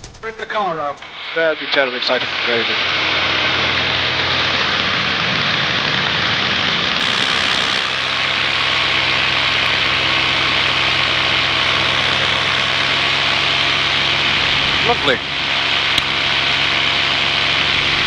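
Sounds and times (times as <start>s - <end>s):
paramotor engine and propeller: 2.4s - 18.0s.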